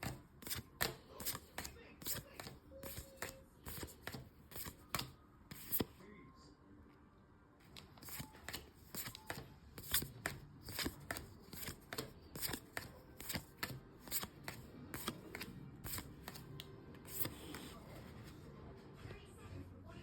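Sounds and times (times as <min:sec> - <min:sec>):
trading cards snapping: 0:00.0 - 0:05.9, 0:07.8 - 0:17.8.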